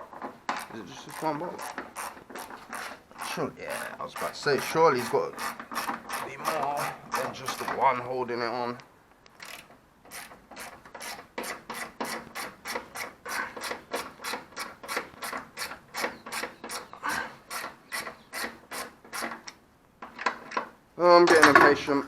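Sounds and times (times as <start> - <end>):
ratchet wrench clicking: 0.5 - 7.7, 9.4 - 16.9.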